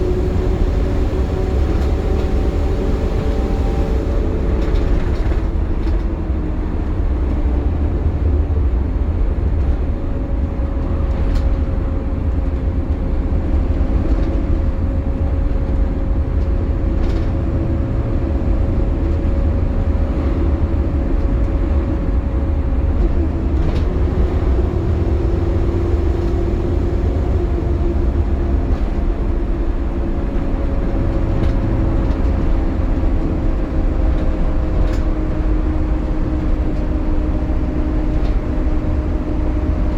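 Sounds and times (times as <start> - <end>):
cooling fan whine: 0.0 - 5.6, 17.9 - 39.9
diesel and road rumble: 0.0 - 39.9.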